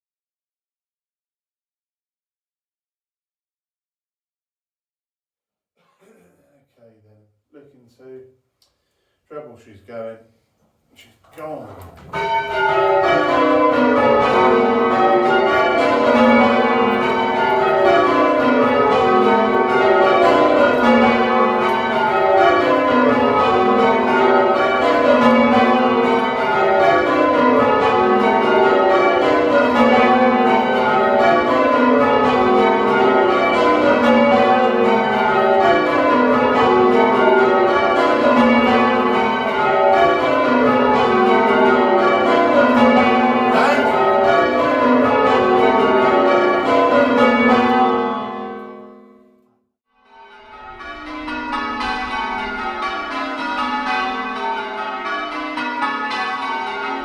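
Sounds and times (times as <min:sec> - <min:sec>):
church bells change ringing: 0:12.0 - 0:49.4, 0:50.0 - 0:57.0.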